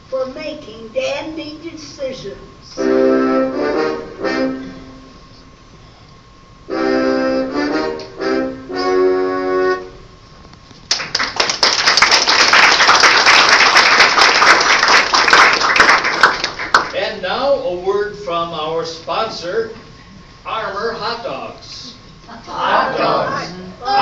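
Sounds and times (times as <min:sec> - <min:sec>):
reedy keyboard chords: 0:02.7 - 0:05.6, 0:06.6 - 0:10.2
audience applause: 0:10.9 - 0:16.9.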